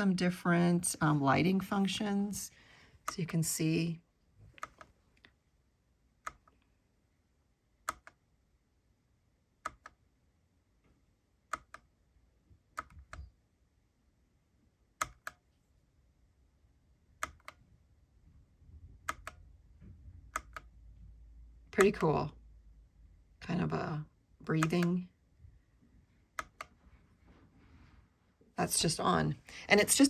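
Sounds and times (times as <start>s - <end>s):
mechanical keyboard key clicks: 15.0s - 15.4s, 19.1s - 19.4s, 20.3s - 20.6s.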